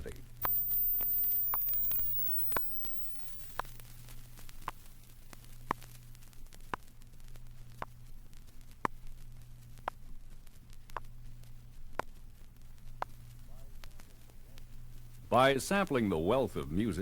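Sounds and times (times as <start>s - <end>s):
steady low hum: 0.0s - 17.0s
vinyl record hiss: 0.0s - 17.0s
sharp clicks: 0.4s - 4.8s.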